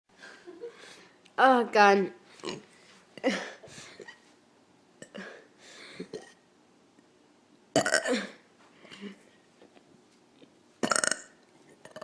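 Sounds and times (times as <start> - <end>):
person burping loudly: 6.0 - 6.4, 7.8 - 8.4, 10.8 - 12.0.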